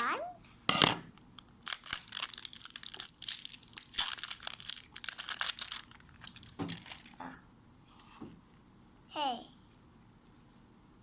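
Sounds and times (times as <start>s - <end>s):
plastic packaging crinkling: 1.6s - 7.2s.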